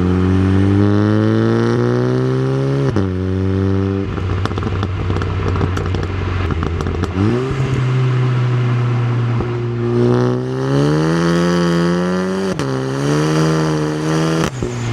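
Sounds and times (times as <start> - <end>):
car engine under throttle: 0.0 - 14.9
exhaust crackles and pops: 3.9 - 10.9.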